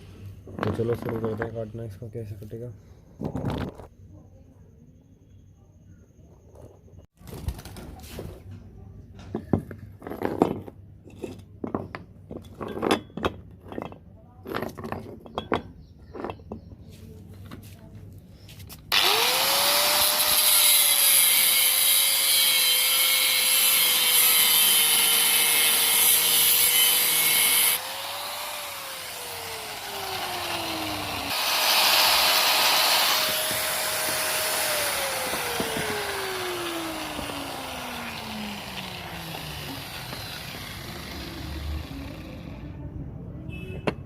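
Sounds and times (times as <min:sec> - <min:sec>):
electric grinder cutting steel: 0:18.9 - 0:42.6.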